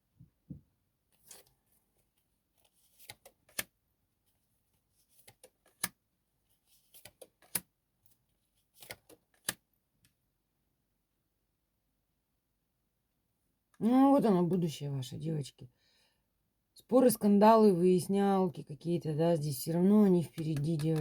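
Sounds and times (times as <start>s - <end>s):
cards tapping on a table: 20.3s - 21.0s.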